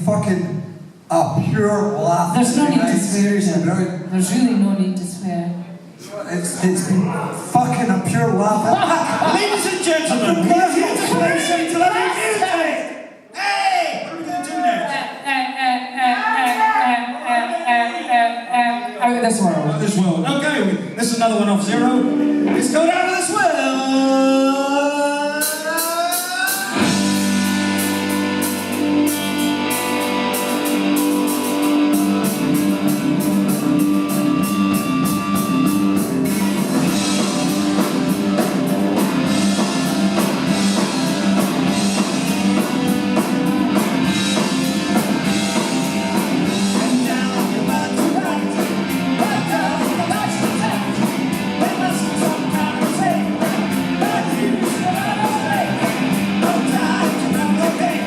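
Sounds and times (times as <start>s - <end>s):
rock band playing: 7.3s - 12.8s, 19.9s - 24.4s, 25.4s - 58.0s
drum kit: 7.5s - 12.5s, 19.9s - 24.1s, 25.3s - 58.0s
held guitar notes: 26.7s - 54.7s.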